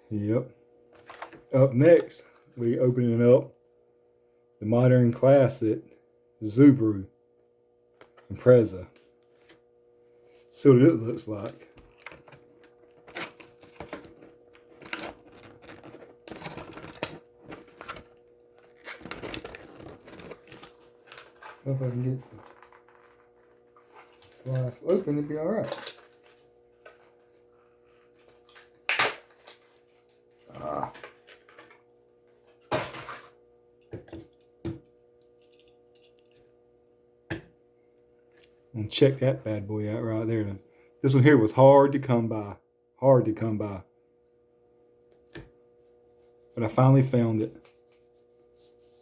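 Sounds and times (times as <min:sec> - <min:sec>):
plastic packaging clicks and crinkles: 0:11.8 - 0:23.5, 0:24.1 - 0:27.1.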